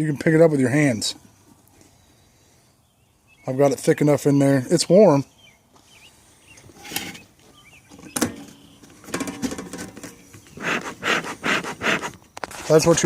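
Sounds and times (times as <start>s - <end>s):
bellows puffing air: 10.4s - 12.3s.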